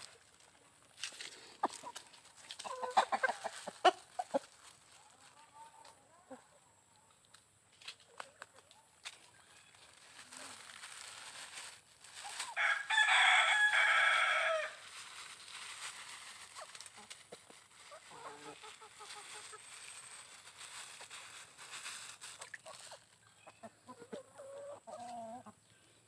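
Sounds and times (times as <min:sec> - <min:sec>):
rooster crowing: 0:12.6 - 0:14.8
chickens clucking softly: 0:22.6 - 0:25.8.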